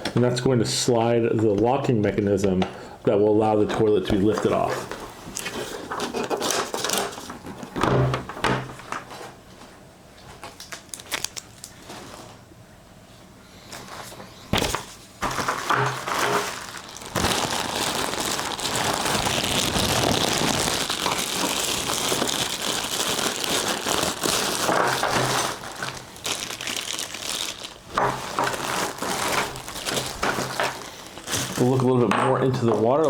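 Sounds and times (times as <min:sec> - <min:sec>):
plastic packaging crinkling: 0:04.2 - 0:07.8, 0:10.2 - 0:12.4, 0:14.6 - 0:33.0.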